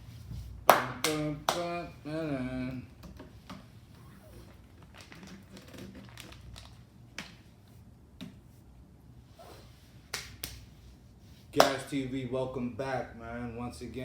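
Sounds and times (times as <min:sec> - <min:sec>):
soft rustling and crinkling: 0:03.2 - 0:08.8.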